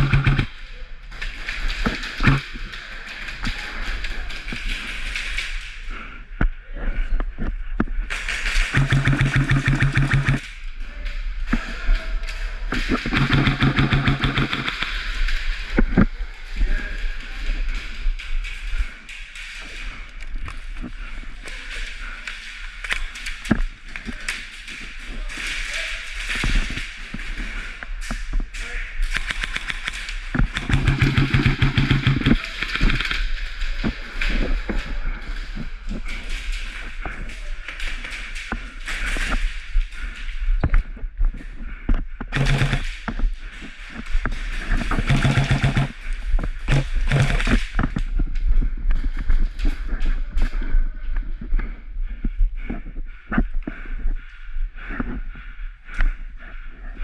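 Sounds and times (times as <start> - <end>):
sharp clicks and knocks: 0.0 - 0.5, 1.2 - 5.7, 7.4 - 10.5, 12.7 - 16.1, 29.0 - 34.8, 41.9 - 50.0
airsoft guns firing: 0.0 - 0.6, 1.2 - 5.4, 8.1 - 10.4, 12.7 - 15.5, 29.0 - 34.5, 42.3 - 43.3, 44.5 - 47.9.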